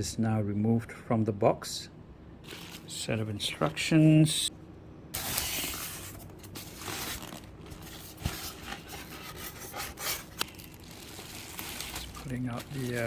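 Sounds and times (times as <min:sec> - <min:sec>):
plastic wrapping rustling: 0:02.4 - 0:03.9, 0:05.2 - 0:13.0.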